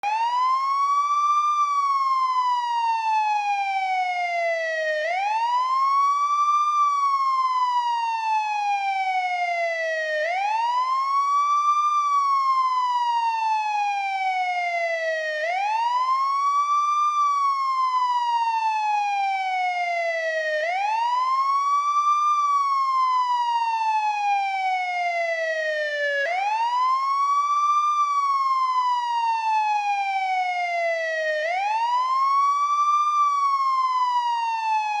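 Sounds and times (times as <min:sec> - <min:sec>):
police siren wailing: 0:00.0 - 0:35.0.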